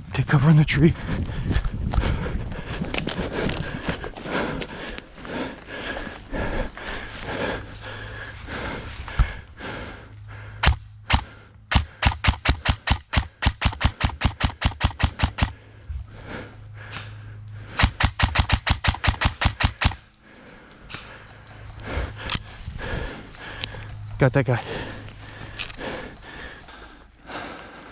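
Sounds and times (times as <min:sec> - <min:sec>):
airsoft rifle shots: 0:10.6 - 0:15.6, 0:17.7 - 0:20.1.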